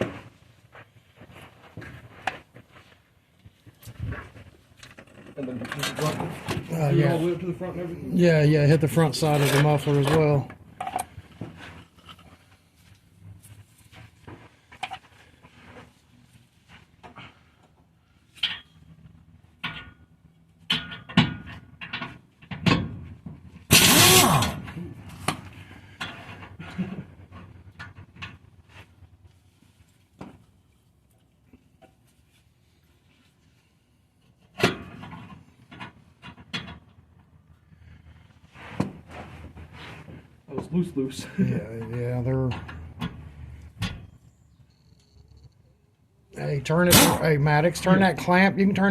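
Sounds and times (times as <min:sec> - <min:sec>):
tools and exhaust parts knocking: 0:18.4 - 0:24.1.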